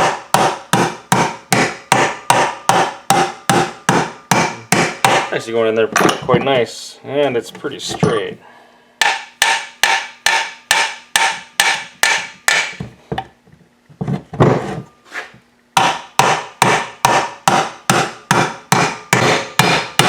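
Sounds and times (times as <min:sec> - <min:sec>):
hammer tapping metal: 0:00.0 - 0:05.3, 0:09.0 - 0:12.8, 0:15.8 - 0:20.0.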